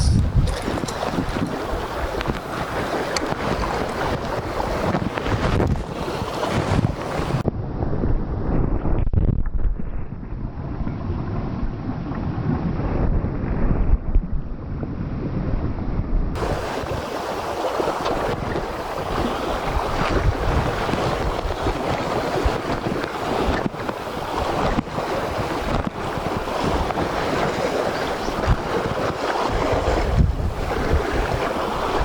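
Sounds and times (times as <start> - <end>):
surf washing on shore: 0.0 - 7.4, 16.4 - 32.0
wind buffeting microphone: 0.0 - 32.0.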